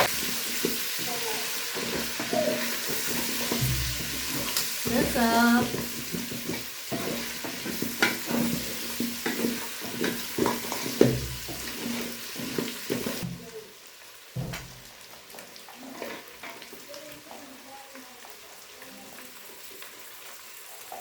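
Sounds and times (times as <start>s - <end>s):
spoon knocking and scraping a pot: 0.0s - 13.4s
onions and meat sizzling in a pot: 0.0s - 21.0s.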